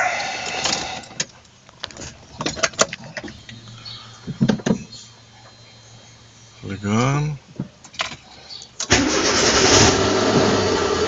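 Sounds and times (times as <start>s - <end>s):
low steady hum: 0.0s - 10.8s
sharp clicks and knocks: 4.3s - 4.9s.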